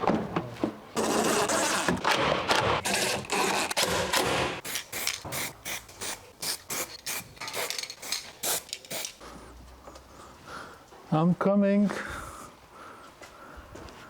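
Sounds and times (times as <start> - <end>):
tool rasping on hard surface: 1.0 - 4.6.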